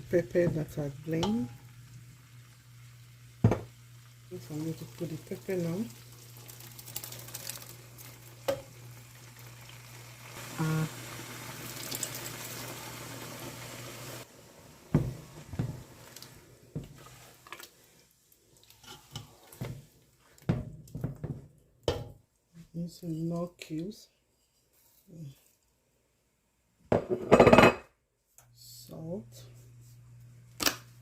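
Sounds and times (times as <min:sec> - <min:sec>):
pepper sizzling in hot oil: 0:00.0 - 0:19.7.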